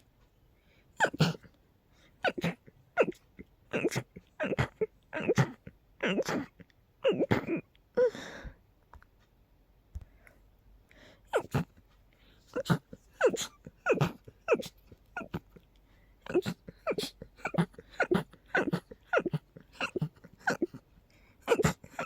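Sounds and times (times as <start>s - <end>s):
person sneezing rapidly: 1.0s - 1.5s, 2.2s - 7.7s, 11.3s - 11.8s, 12.5s - 15.6s, 16.2s - 20.8s, 21.4s - 22.0s.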